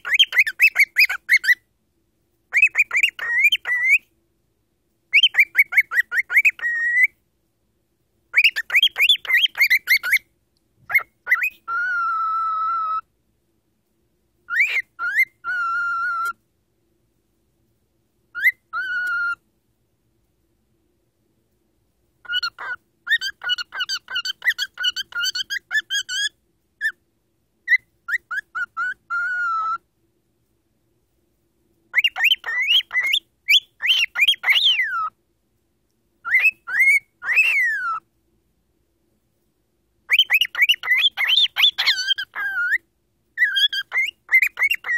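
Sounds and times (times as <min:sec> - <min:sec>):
cockatiel whistling and chirping: 0:00.0 - 0:01.6, 0:02.5 - 0:04.1, 0:05.1 - 0:07.2, 0:08.3 - 0:13.1, 0:14.5 - 0:16.4, 0:18.3 - 0:19.4, 0:22.2 - 0:27.0, 0:27.6 - 0:29.9, 0:31.9 - 0:35.2, 0:36.2 - 0:38.1, 0:40.1 - 0:44.9.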